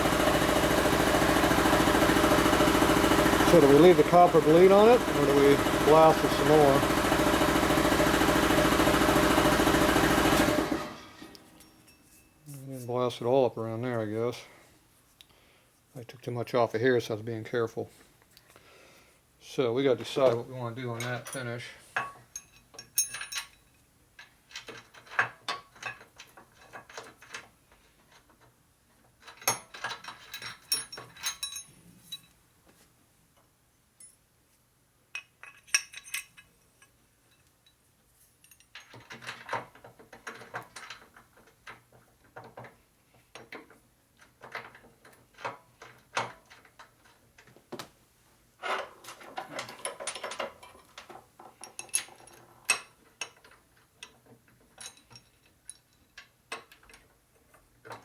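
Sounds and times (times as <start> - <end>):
small metal parts clinking: 20.9 - 28.4, 29.2 - 32.4, 35.1 - 37.8, 38.4 - 41.2, 49.0 - 57.1.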